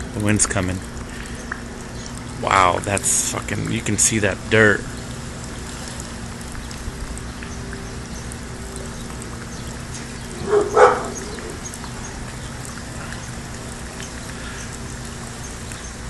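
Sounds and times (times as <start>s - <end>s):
faint steady hum: 0.0s - 16.0s
dog barking: 10.4s - 11.6s.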